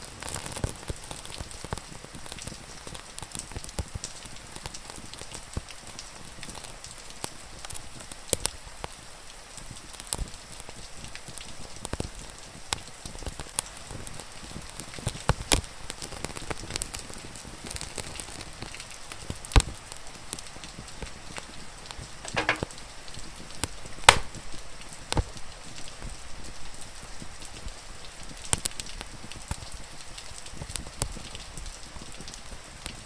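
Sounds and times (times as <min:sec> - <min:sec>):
rain hiss: 0:00.0 - 0:33.0
wood fire crackling: 0:13.2 - 0:25.4
fire popping: 0:22.2 - 0:22.8, 0:24.0 - 0:24.5.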